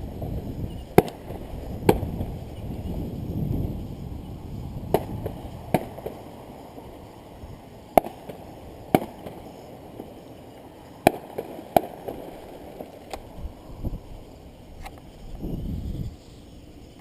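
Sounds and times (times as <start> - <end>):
fireworks bangs: 0.0 - 7.0, 7.6 - 13.4
faint fireworks pops: 0.1 - 2.6, 4.6 - 6.9, 7.8 - 14.0.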